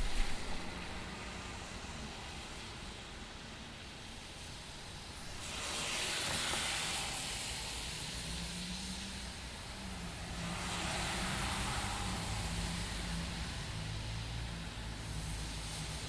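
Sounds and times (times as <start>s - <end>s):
low engine hum: 0.0s - 1.2s
tyres hissing on wet road: 0.0s - 16.0s.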